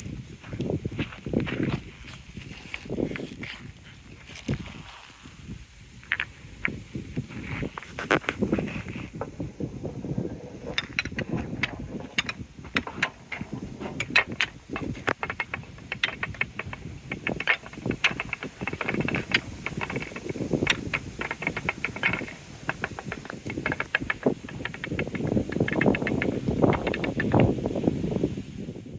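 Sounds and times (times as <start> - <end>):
balls rolling rumble: 5.9 - 28.2
balls clicking and clacking: 10.4 - 27.6.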